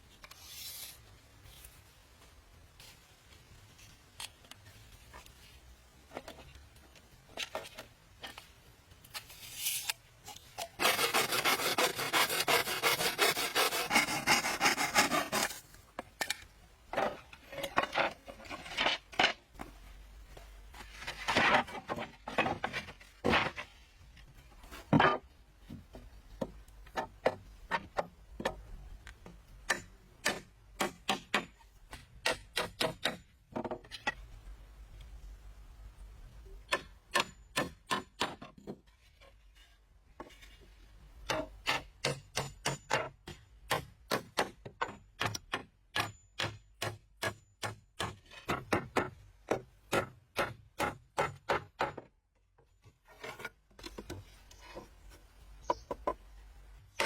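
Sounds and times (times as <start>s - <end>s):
wood being rasped: 10.8s - 15.6s.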